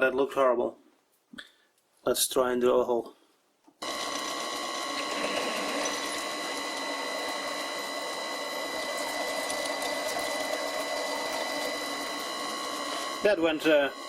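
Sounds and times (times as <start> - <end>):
drill bit boring wood: 3.8 - 14.0
wood lathe motor whine: 3.8 - 14.0.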